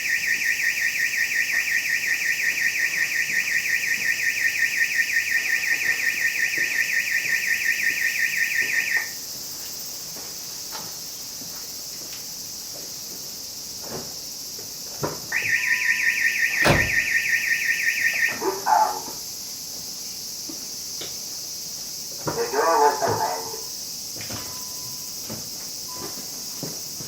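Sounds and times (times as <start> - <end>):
car alarm siren warbling: 0.0 - 9.2, 15.3 - 19.1.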